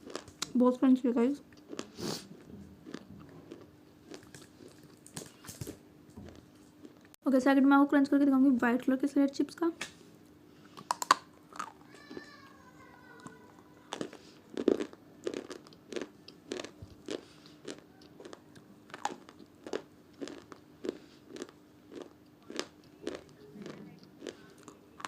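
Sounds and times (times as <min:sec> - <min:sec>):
chalky pencil chips crunching: 0:13.2 - 0:23.4.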